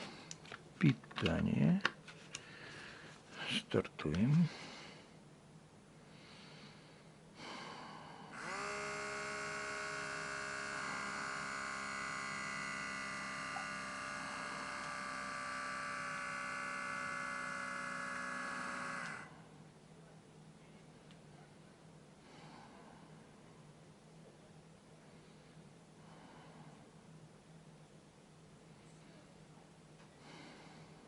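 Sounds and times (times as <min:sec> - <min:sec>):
electric air pump humming: 0:07.4 - 0:19.4.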